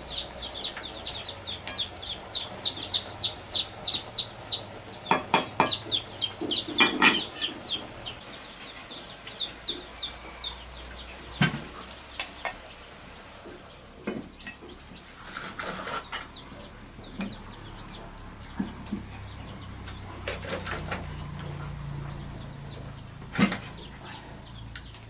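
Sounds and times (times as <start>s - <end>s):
chickens clucking: 0.0s - 25.0s
sharp knocks and clatters: 5.0s - 8.2s.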